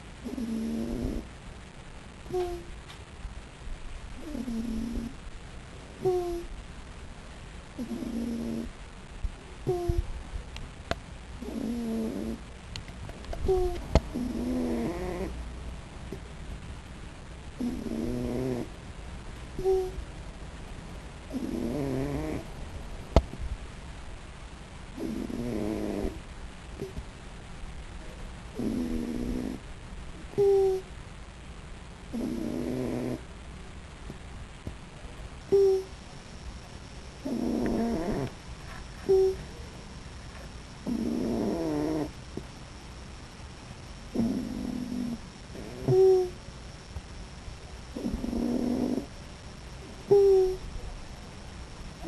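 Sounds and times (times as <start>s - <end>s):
raccoon snoring: 0.0s - 1.3s, 2.3s - 2.7s, 4.2s - 5.2s, 6.0s - 6.5s, 7.8s - 8.8s, 9.6s - 10.1s, 11.4s - 12.5s, 13.4s - 15.4s, 17.6s - 18.7s, 19.6s - 20.0s, 21.3s - 22.5s, 24.9s - 27.0s, 28.5s - 29.7s, 30.3s - 30.9s, 32.1s - 33.3s, 35.5s - 36.0s, 37.2s - 38.4s, 39.0s - 39.6s, 40.3s - 42.2s, 44.1s - 46.4s, 47.9s - 49.2s, 49.8s - 50.7s.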